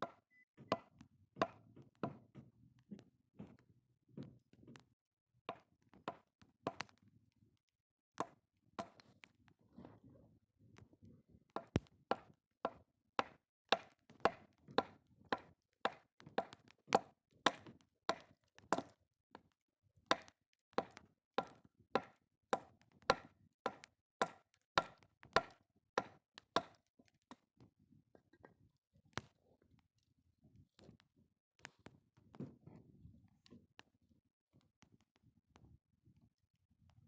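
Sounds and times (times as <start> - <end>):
blade chopping wood: 11.6 - 19.0, 20.1 - 26.8.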